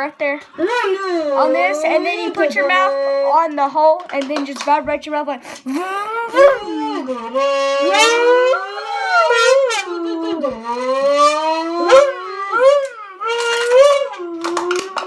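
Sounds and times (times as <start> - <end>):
lip-buzzing into plastic bottle: 5.4 - 15.0.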